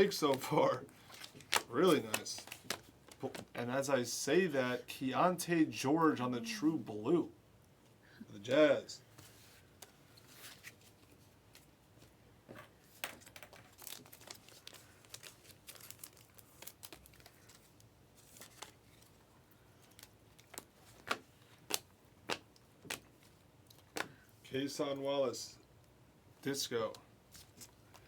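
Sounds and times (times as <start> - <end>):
cards being handled: 0.0 - 3.5, 13.0 - 19.2, 19.8 - 24.2
card pack wrapper tearing: 13.6 - 17.6.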